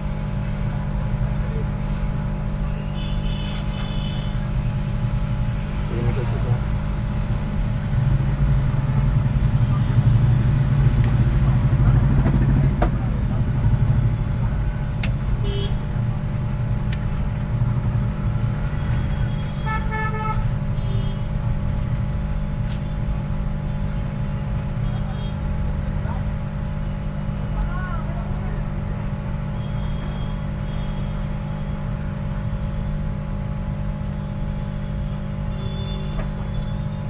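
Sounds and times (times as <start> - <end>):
short horn-like tone: 2.7 - 4.4, 18.8 - 21.3, 29.6 - 31.4, 34.2 - 37.0
hot-air blower humming: 3.2 - 36.9.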